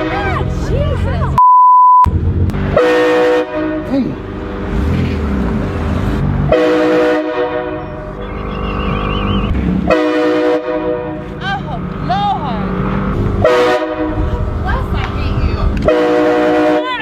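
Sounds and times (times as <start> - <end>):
low vehicle rumble: 0.0 - 1.4, 2.0 - 17.0
train horn blasting: 2.7 - 4.2, 6.5 - 8.3, 9.8 - 11.4, 13.4 - 14.4, 15.8 - 17.0.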